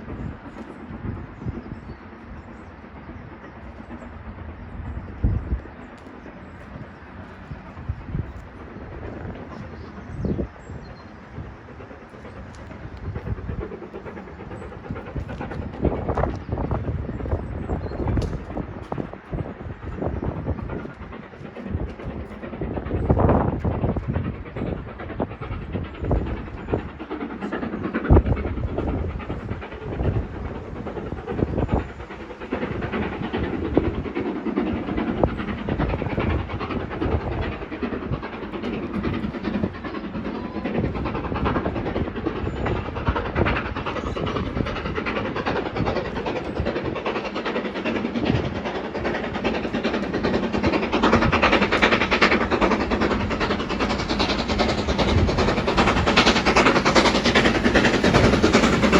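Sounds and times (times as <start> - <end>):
train rumbling on rails: 0.0 - 58.9.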